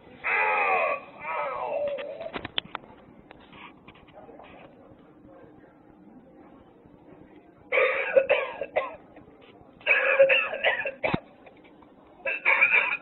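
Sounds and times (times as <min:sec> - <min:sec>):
recorded smoker's cough: 0:07.7 - 0:11.4, 0:12.3 - 0:13.0.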